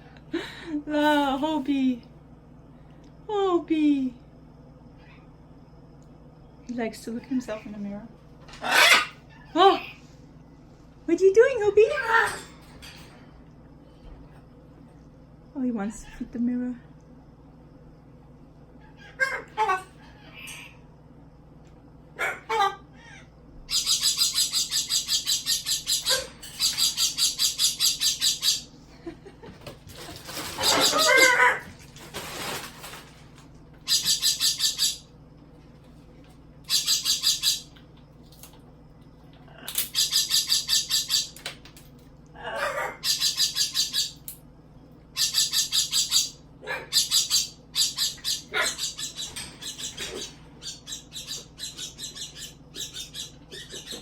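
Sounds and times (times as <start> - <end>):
parrot squawk: 8.5 - 10.0, 11.9 - 12.5, 18.8 - 20.8, 22.2 - 28.7, 30.4 - 31.7, 33.8 - 35.1, 36.7 - 37.7, 39.9 - 41.4, 42.4 - 44.2, 45.2 - 54.0
parrot wings flapping: 29.5 - 33.6.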